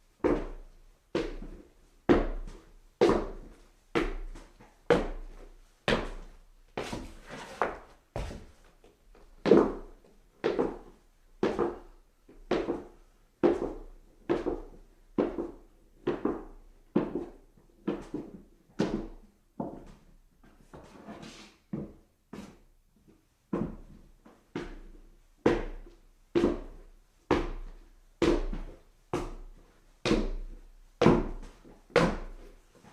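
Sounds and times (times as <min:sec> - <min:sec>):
footsteps on stairs: 0:00.2 - 0:17.3, 0:26.4 - 0:32.9.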